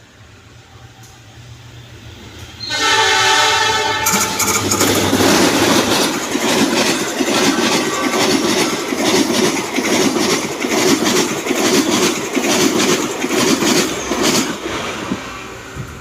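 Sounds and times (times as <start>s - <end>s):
train wheels clattering on rails: 4.0s - 16.0s.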